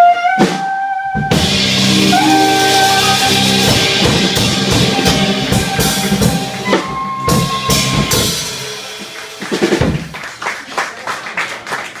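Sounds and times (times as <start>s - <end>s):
jazz band playing: 0.0s - 10.2s
piano: 0.4s - 10.1s
sharp drum hits: 1.2s - 10.1s.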